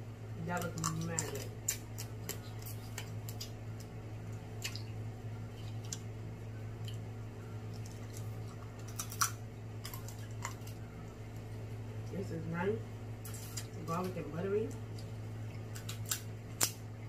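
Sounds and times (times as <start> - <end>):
steady low hum: 0.0 - 17.0
crab shell cracking: 0.6 - 4.9, 7.7 - 10.8, 14.8 - 16.9.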